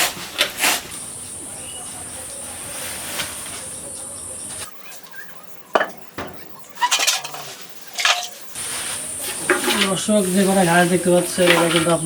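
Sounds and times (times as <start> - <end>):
metal pots clattering: 5.7 - 8.6.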